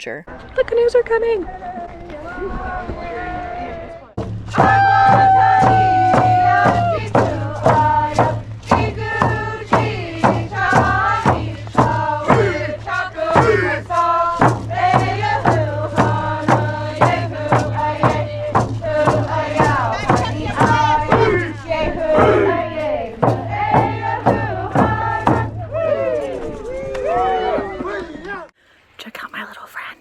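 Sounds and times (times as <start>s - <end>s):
steady drum beat: 4.2s - 25.8s
group of voices chanting: 9.3s - 16.2s, 18.9s - 26.5s.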